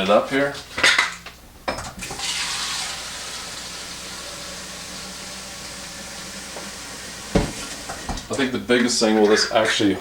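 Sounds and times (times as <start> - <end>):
tap water filling plastic bottle: 2.0 - 8.4.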